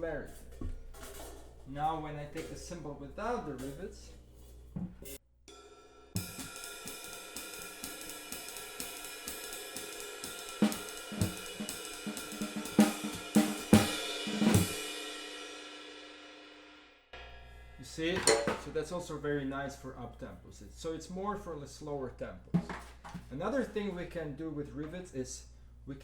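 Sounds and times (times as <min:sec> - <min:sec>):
jazz swing drum kit: 0:00.0 - 0:05.2, 0:06.2 - 0:16.2.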